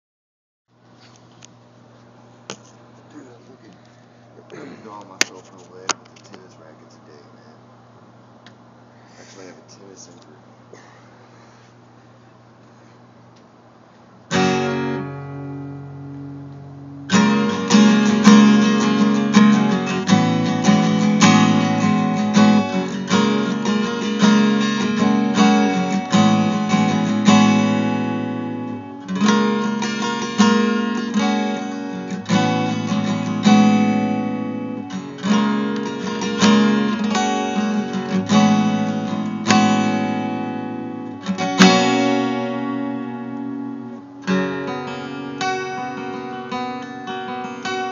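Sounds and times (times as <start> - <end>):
acoustic guitar strummed and picked: 14.2 - 47.9.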